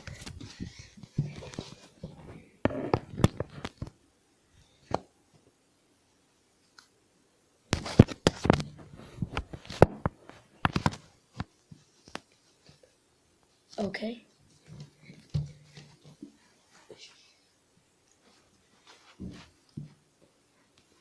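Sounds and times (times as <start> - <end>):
rustling: 14.4 - 21.0.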